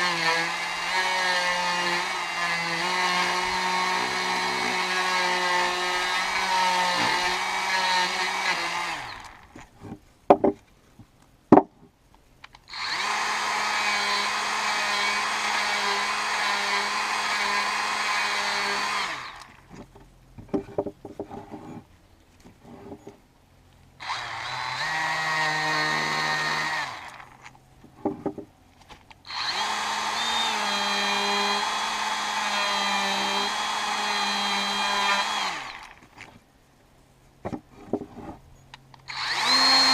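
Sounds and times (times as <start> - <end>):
die grinder whining into wood: 0.0 - 10.0, 12.7 - 19.9, 24.0 - 28.4, 29.2 - 36.2, 39.0 - 39.9
sharp knocks: 9.9 - 10.6.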